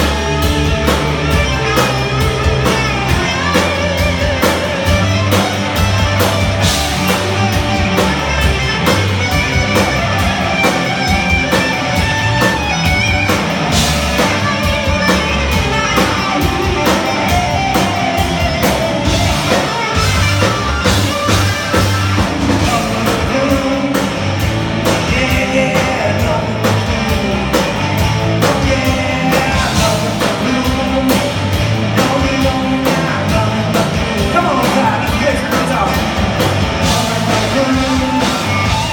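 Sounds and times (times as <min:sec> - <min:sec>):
live rock band playing: 0:00.0 - 0:38.9
person singing: 0:22.5 - 0:38.9.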